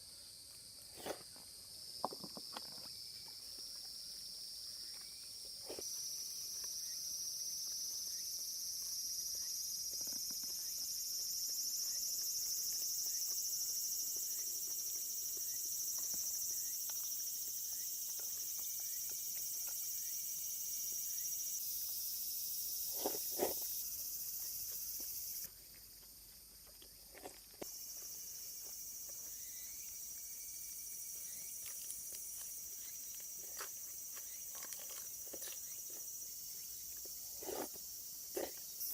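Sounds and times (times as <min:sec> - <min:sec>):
insect chorus chirring: 0:00.0 - 0:38.9.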